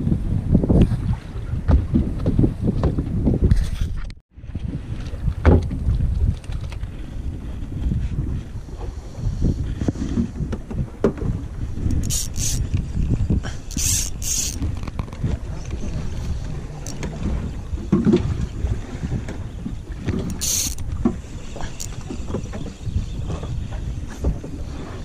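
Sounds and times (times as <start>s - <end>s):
wind buffeting microphone: 0.0s - 25.0s
short hissing bursts: 11.9s - 12.6s, 13.7s - 14.6s, 20.4s - 20.8s.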